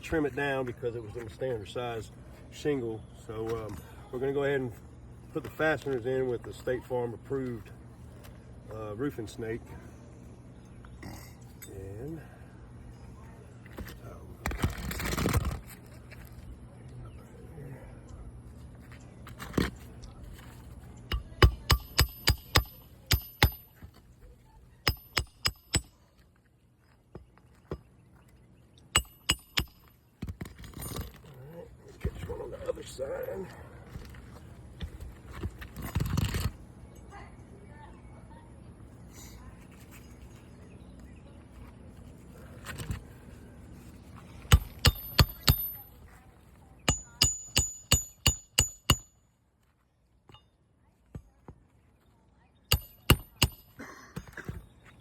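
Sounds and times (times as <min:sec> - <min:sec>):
ringing metal hammer strikes: 0:21.1 - 0:23.9, 0:24.8 - 0:26.0, 0:28.9 - 0:30.0, 0:44.5 - 0:46.0, 0:46.9 - 0:49.2, 0:52.7 - 0:53.8.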